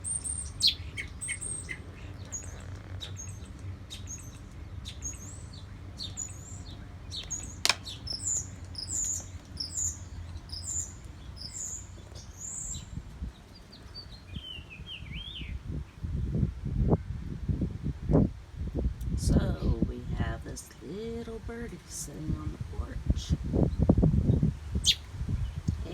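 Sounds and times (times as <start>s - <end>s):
bird twittering: 0.0s - 12.9s, 24.8s - 25.1s
small bird chirping: 0.0s - 15.6s, 24.7s - 25.7s
sharp click: 7.2s - 7.9s.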